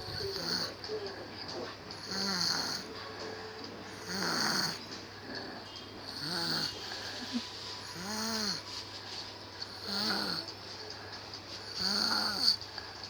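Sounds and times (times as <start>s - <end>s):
person snoring: 2.0s - 2.9s, 4.0s - 4.8s, 6.2s - 7.3s, 8.0s - 8.6s, 9.8s - 10.5s, 11.8s - 12.6s.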